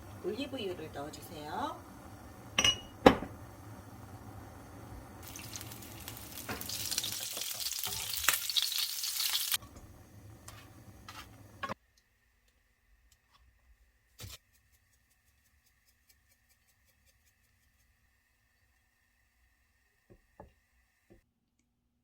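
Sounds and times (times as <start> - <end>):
oil sizzling in a pan: 0.0 - 11.8.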